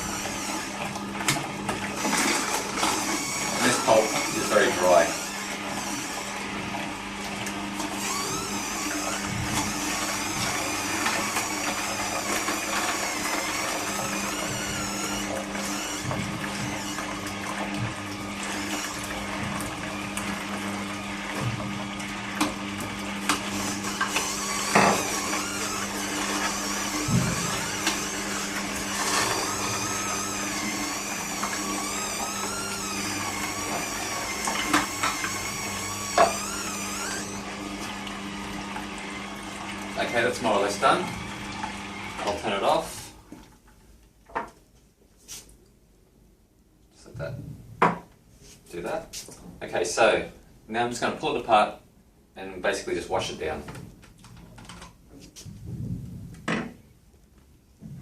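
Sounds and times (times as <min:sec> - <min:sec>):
auger crushing produce: 0:00.0 - 0:43.4
juicer motor humming: 0:00.0 - 0:43.8.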